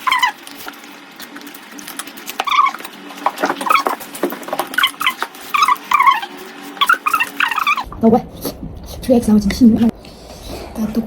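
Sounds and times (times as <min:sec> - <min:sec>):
animal whining: 0:00.0 - 0:07.9.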